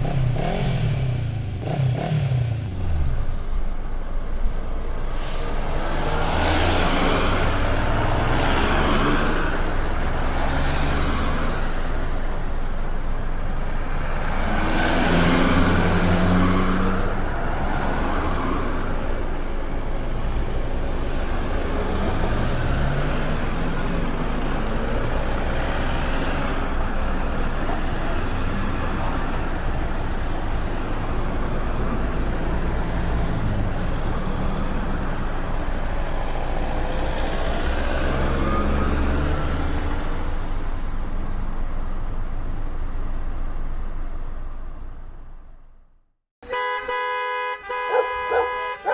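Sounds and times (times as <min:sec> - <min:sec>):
road traffic hum: 0:00.0 - 0:48.9
vehicle passing loudly: 0:04.8 - 0:12.2, 0:13.8 - 0:19.2, 0:20.1 - 0:40.8.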